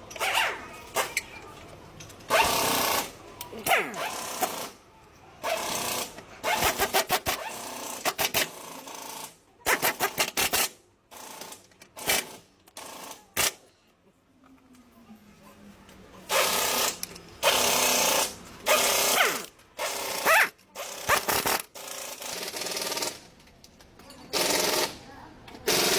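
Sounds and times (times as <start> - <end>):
pneumatic impact wrench hammering: 0.0 - 1.4, 2.2 - 4.8, 5.4 - 13.6, 16.3 - 23.3, 24.3 - 25.0, 25.6 - 25.9.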